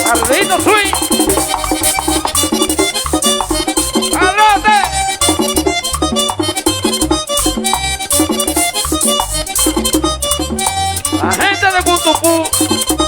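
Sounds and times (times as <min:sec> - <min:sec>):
accordion melody: 0:00.0 - 0:13.0
fast percussion beat: 0:00.0 - 0:13.0
pulsing bass: 0:00.0 - 0:13.0.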